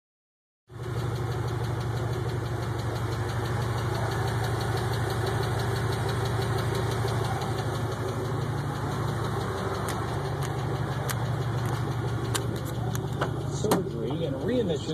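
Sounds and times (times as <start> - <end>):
car engine idling: 0.7 - 14.9
fast even ticking: 1.1 - 14.9.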